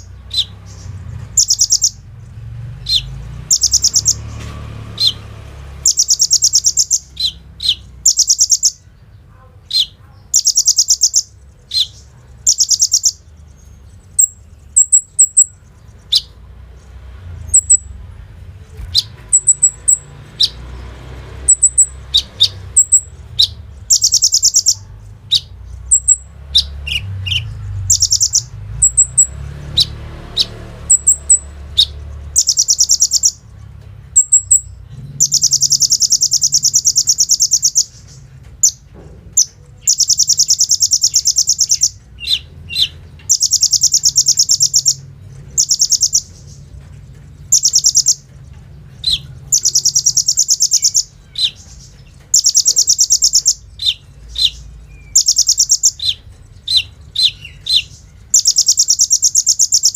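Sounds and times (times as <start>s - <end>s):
bird rattling trills: 0.0s - 2.2s, 2.9s - 8.8s, 21.4s - 33.5s, 39.4s - 59.9s
bird sharp chips: 9.7s - 18.0s, 18.6s - 59.9s.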